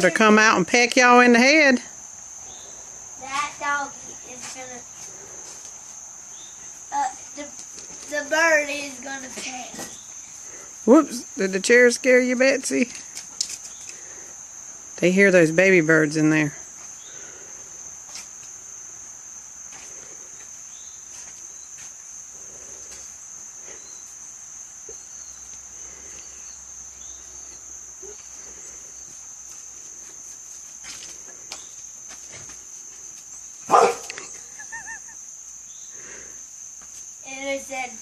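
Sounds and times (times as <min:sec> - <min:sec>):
high-pitched insect trill: 0:00.0 - 0:38.0
dog barking: 0:33.7 - 0:34.2
faint small calls: 0:33.8 - 0:36.3.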